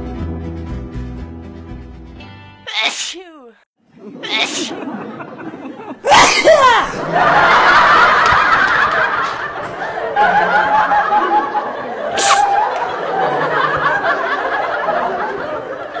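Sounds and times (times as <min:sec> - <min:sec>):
people laughing and snickering: 0:03.9 - 0:16.0.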